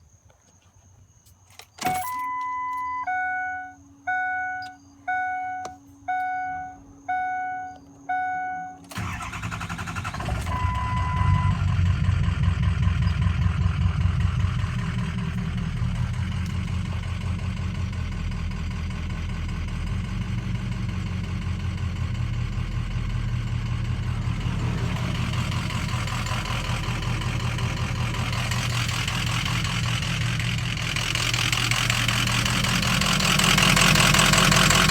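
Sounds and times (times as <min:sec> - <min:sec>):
dashboard warning chime: 0:01.8 - 0:09.3, 0:10.3 - 0:11.7
diesel engine starting and idling: 0:01.8 - 0:34.9.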